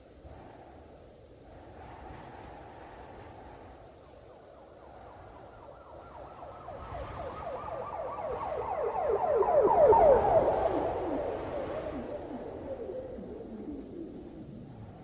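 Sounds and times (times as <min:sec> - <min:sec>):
police siren wailing: 0:05.3 - 0:14.6.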